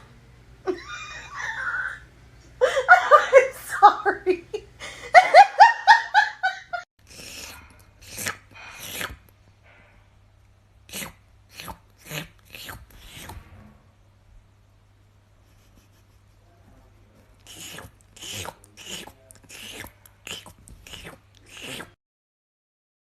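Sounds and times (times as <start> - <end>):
person laughing: 0.7 - 6.8, 15.4 - 16.6
mouth slurping and licking: 7.0 - 9.4, 10.9 - 13.5, 17.4 - 22.0.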